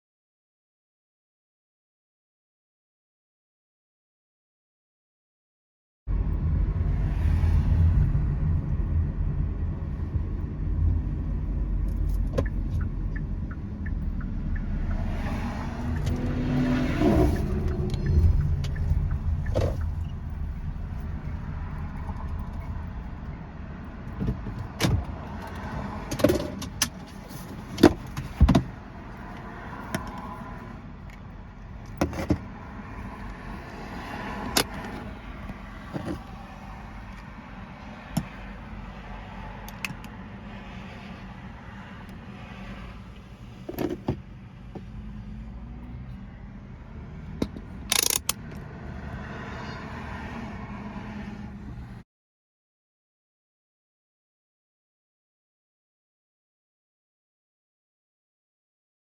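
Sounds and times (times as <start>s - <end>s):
car engine rumbling: 6.1s - 52.0s
sharp clicks and knocks: 47.4s - 48.7s.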